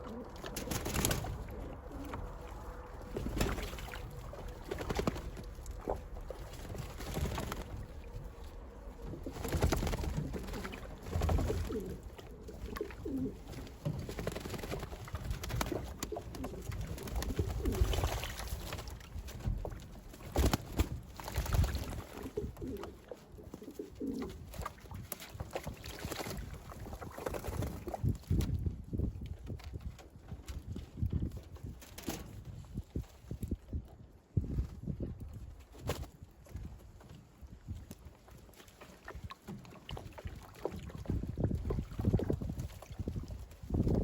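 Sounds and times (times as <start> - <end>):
pigeons cooing: 0.0 - 3.4, 10.0 - 13.5.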